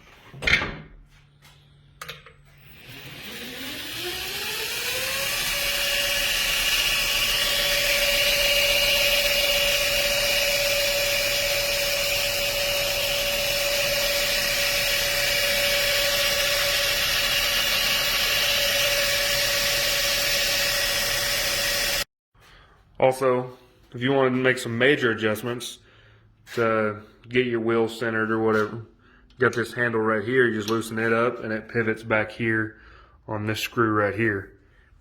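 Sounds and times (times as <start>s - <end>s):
belt grinder motor whine: 2.5s - 22.1s.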